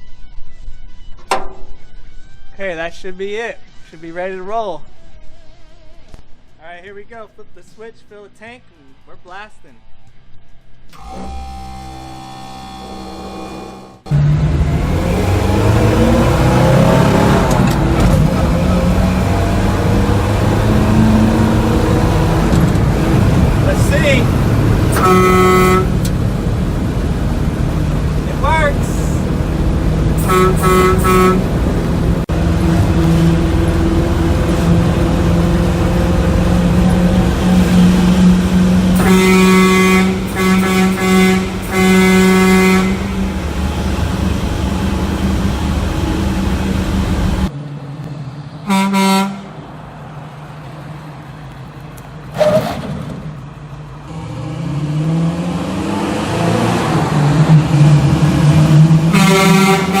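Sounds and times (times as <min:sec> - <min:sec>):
hum rising in pitch: 0:11.0 - 0:47.5
truck air horn blasts: 0:24.9 - 0:26.1, 0:30.2 - 0:31.7, 0:38.9 - 0:43.5, 0:48.6 - 0:49.6, 0:59.1 - 1:00.0.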